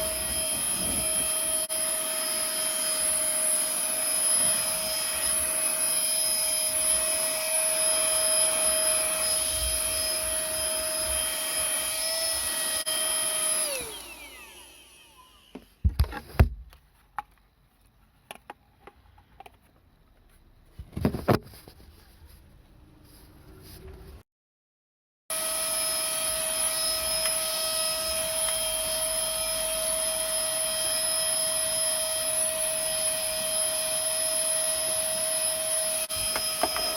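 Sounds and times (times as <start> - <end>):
handheld vacuum cleaner whine: 0.0 - 15.9, 25.3 - 36.9.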